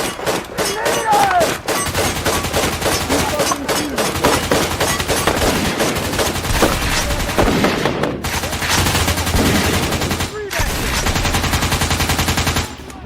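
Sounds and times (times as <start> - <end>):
toy blasters firing rapidly: 0.0 - 13.0.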